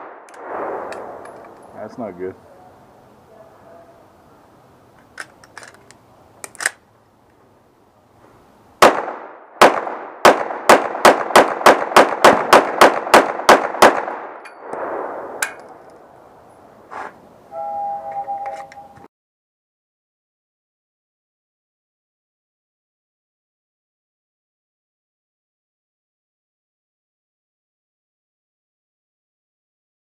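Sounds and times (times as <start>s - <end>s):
gun handling clicks: 4.9s - 6.8s
pistol shots echoing: 8.8s - 14.9s.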